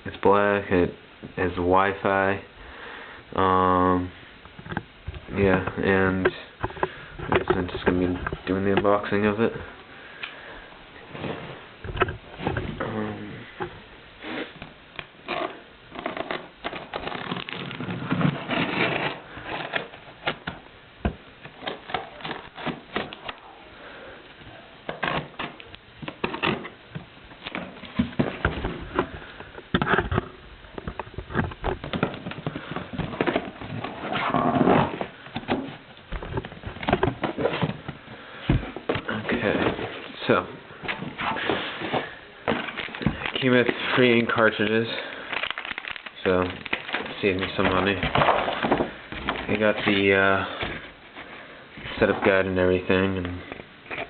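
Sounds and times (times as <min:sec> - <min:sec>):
cardboard box being opened: 0:15.3 - 0:20.0
packaging rustling and rattling: 0:29.8 - 0:51.3.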